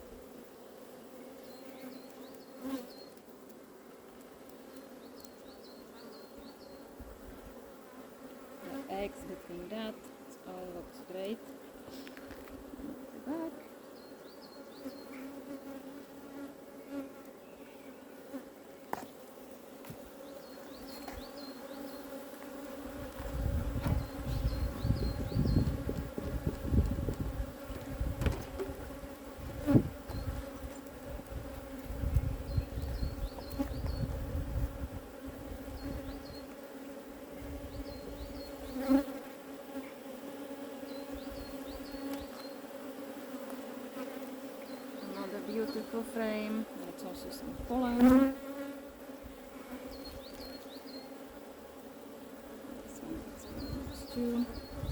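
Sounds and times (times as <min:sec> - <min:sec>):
bees humming: 0:00.0 - 0:54.9.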